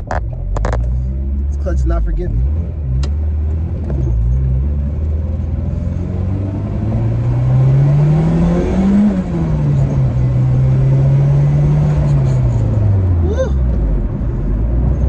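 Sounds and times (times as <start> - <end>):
car engine accelerating: 0.0 - 15.0.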